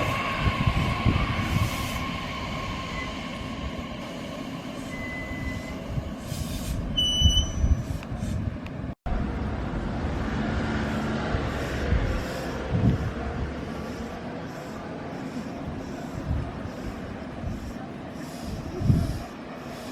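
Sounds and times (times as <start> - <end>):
high-pitched train squeals: 0.0 - 8.0
electric train rumbling: 0.0 - 19.9.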